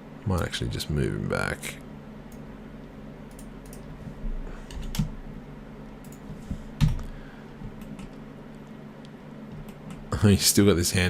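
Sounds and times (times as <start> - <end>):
low steady hum: 0.0 - 11.0
computer keyboard keystrokes: 3.3 - 3.9, 4.7 - 5.2, 6.0 - 7.1.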